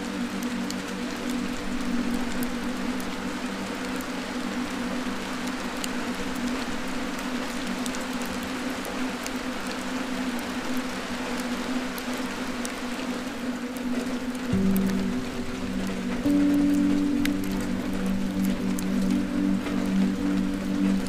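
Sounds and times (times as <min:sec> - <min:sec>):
wood fire crackling and hissing: 0:00.0 - 0:21.0
low drone tone: 0:14.5 - 0:21.0.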